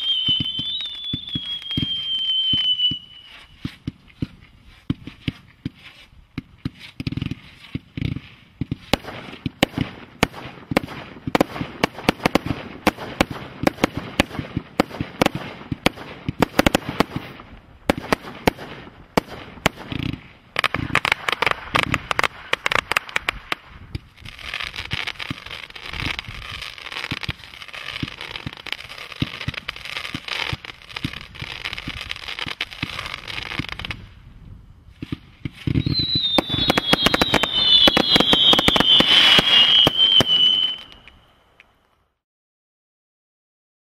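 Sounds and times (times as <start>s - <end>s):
firework bangs and cracks: 0.0s - 41.2s
firework crackling: 0.0s - 41.7s.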